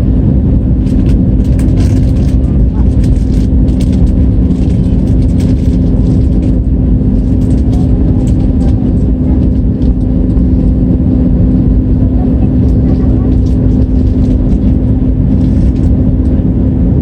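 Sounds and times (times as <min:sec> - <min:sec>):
aircraft engine and airflow rumble: 0:00.0 - 0:17.0
low hum: 0:00.0 - 0:17.0.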